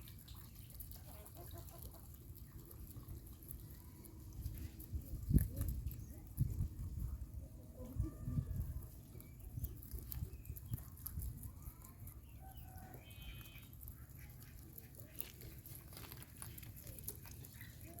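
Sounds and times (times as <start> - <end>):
chickens clucking: 0.0 - 5.0.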